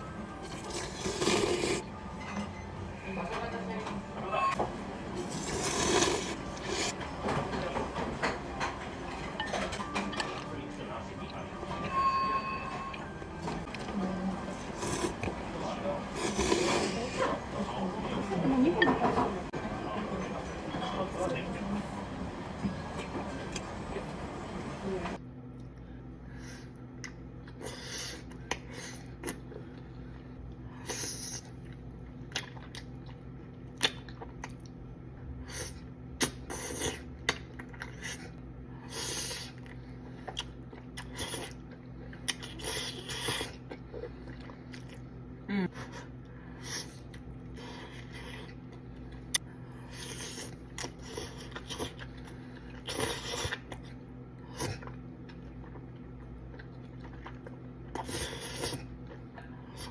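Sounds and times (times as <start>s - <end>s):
steady low hum: 0.0s - 59.9s
slurping and chewing: 0.4s - 1.8s, 5.2s - 7.0s, 16.1s - 17.2s, 35.4s - 45.2s, 46.0s - 59.9s.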